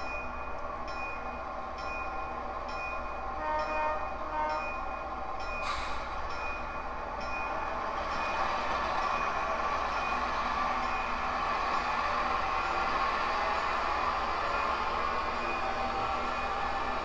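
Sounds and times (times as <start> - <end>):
locomotive bell ringing: 0.0 - 11.2
locomotive engine sound: 0.0 - 17.0
horn-like sound: 3.4 - 4.7.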